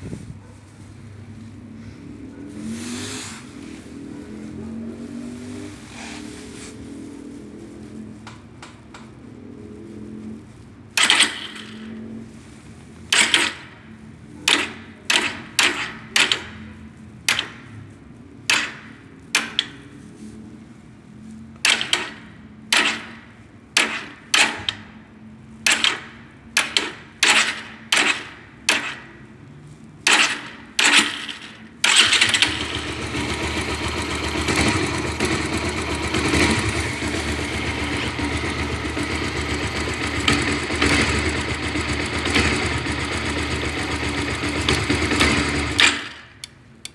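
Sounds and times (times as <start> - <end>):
motorcycle engine running: 9.3 - 17.9, 30.1 - 46.9
sharp irregular engine clacks: 11.0 - 12.5, 13.1 - 20.1, 21.6 - 29.4, 30.0 - 46.9.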